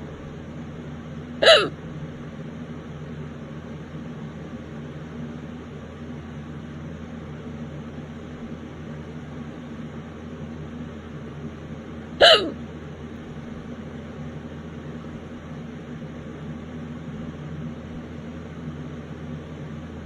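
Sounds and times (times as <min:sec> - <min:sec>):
background hum: 0:00.0 - 0:20.0
person hiccuping: 0:01.4 - 0:01.8, 0:12.2 - 0:12.6.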